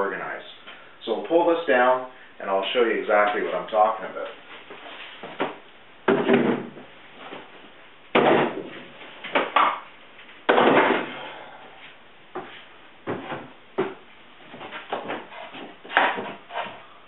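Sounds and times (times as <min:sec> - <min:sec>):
wooden knocks and clunks: 0:05.2 - 0:07.4, 0:12.3 - 0:16.8.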